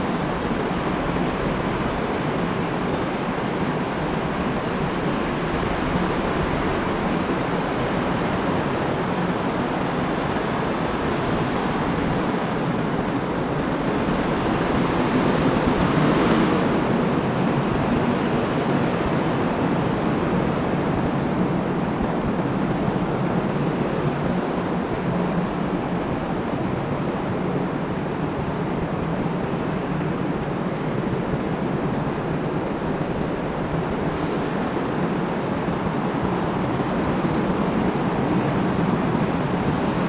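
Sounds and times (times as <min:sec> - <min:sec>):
road traffic noise: 0:00.0 - 0:20.3.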